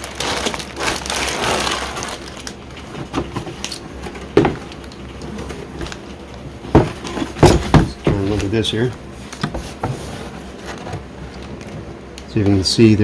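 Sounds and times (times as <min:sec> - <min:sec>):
plastic bags rustling: 0:00.0 - 0:11.9
bags and box knocking on table: 0:04.1 - 0:04.7, 0:06.7 - 0:08.5.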